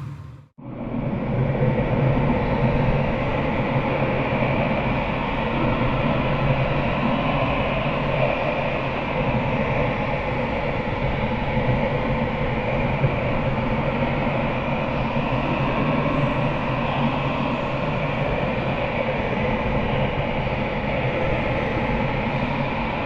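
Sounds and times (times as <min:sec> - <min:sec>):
faint low hum: 0:00.0 - 0:00.5.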